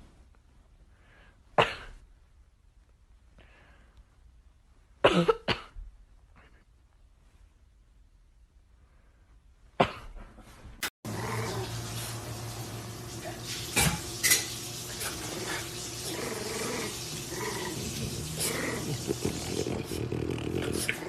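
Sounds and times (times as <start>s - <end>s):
dog growling: 11.1s - 11.9s, 15.0s - 21.0s.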